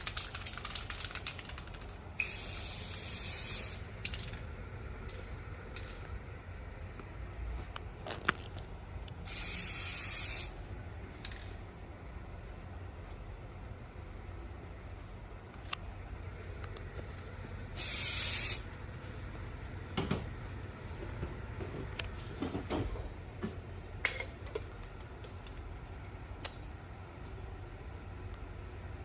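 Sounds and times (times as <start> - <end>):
spray hissing: 2.2 - 3.9, 9.2 - 10.6, 17.8 - 18.7.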